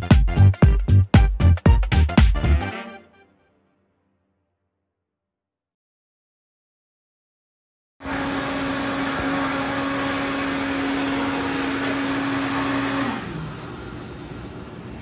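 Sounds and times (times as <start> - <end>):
electric motor humming: 8.0 - 14.4.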